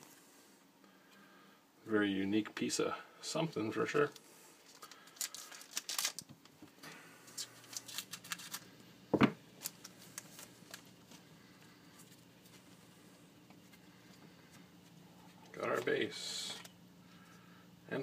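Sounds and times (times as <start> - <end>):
cards rustling and flicking: 4.0 - 8.8, 9.5 - 12.7.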